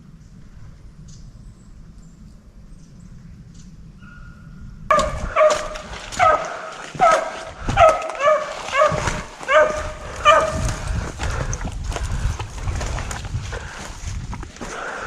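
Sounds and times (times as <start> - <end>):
low rumbling noise: 0.0 - 15.0
dog barking in short yelps: 4.9 - 10.6.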